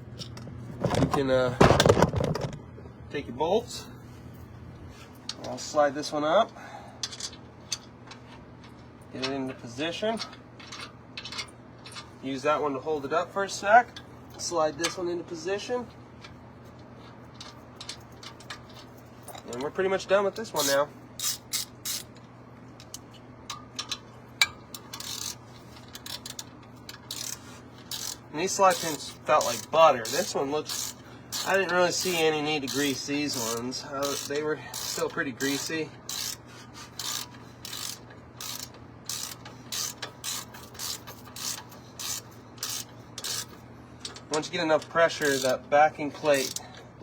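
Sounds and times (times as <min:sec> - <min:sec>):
ratchet wrench clicking: 0:20.5 - 0:22.1, 0:22.8 - 0:46.8
light metal clicks and taps: 0:22.1 - 0:25.2.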